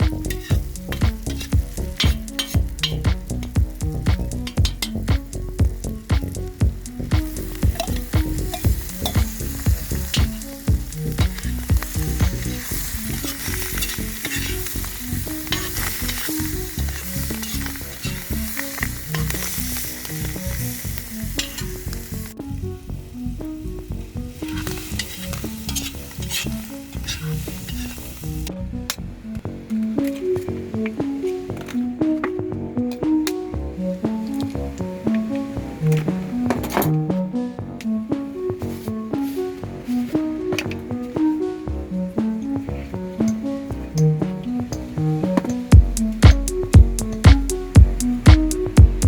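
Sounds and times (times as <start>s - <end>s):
stirring in a pan: 0.1s - 22.3s, 24.4s - 28.4s
omelet sizzling in a pan: 7.3s - 22.3s, 24.5s - 28.5s.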